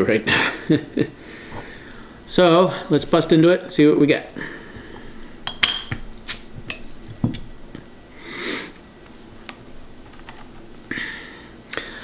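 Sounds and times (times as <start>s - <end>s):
bottle and glass clicks and knocks: 5.4s - 6.0s, 6.7s - 7.5s
beer bottle opening hiss: 6.2s - 6.8s.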